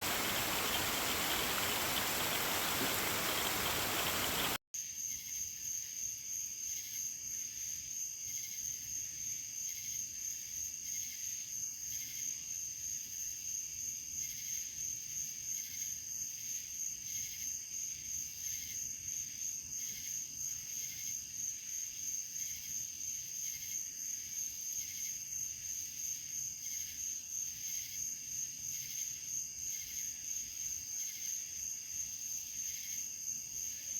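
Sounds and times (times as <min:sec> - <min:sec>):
crickets trilling: 0:00.0 - 0:04.6
loud rushing hiss: 0:00.0 - 0:04.6.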